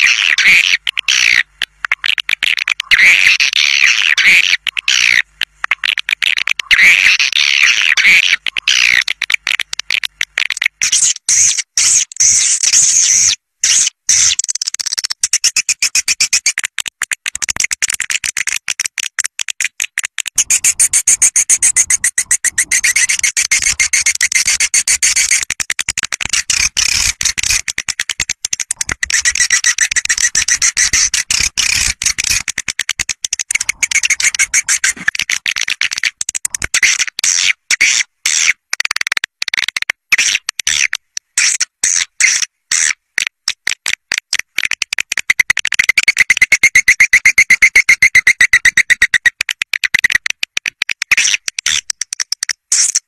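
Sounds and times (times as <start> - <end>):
swiftlets chirping rapidly: 20.4 - 35.1, 45.9 - 49.4.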